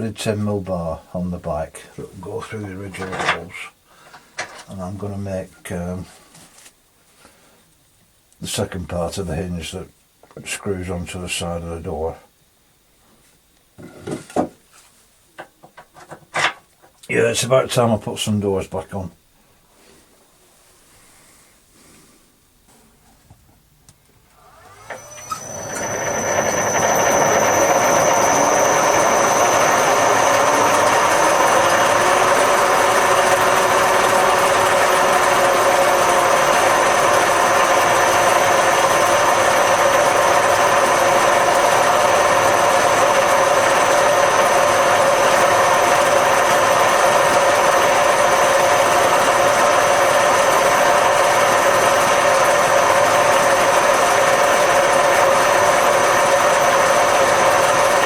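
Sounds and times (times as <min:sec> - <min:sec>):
machine tool motor whining: 0:24.3 - 0:58.0.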